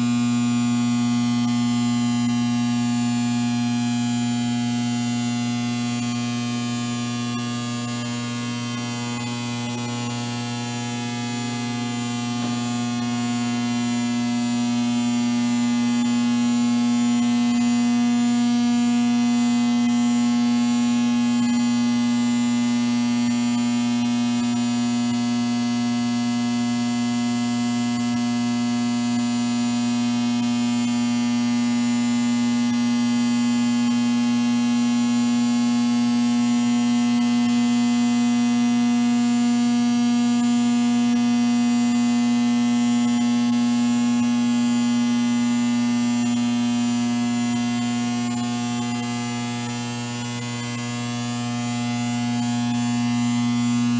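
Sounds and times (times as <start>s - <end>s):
electrical hum and buzz: 46.9s - 53.9s.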